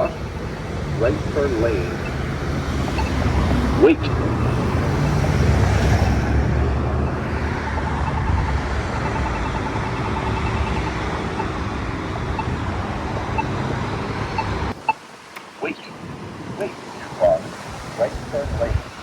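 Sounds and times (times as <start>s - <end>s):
road traffic passing: 0.0s - 19.0s
pedestrian button electronic ticks: 1.1s - 4.3s, 7.8s - 15.9s.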